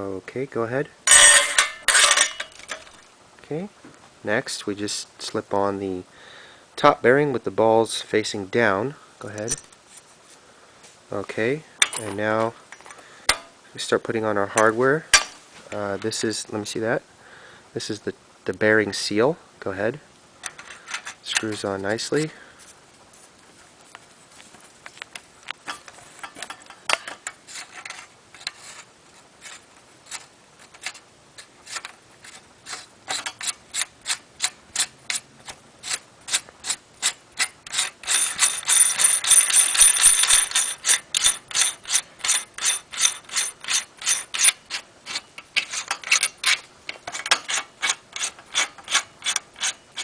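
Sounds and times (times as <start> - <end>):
metallic ratchet-like clicks: 35.9 - 50.0.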